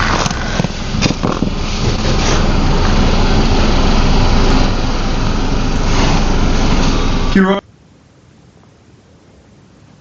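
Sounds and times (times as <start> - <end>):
car engine running: 0.0 - 7.6
steady rushing noise: 0.0 - 7.6.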